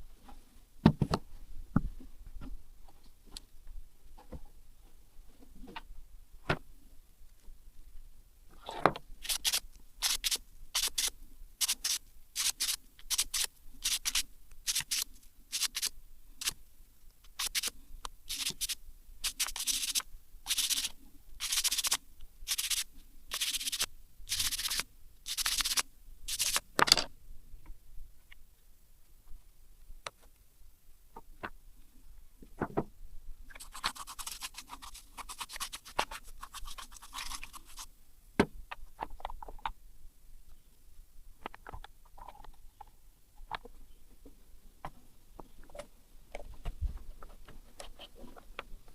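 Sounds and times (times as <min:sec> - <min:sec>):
steady hiss: 0:09.2 - 0:26.8
brush scrubbing engine part: 0:33.6 - 0:37.9.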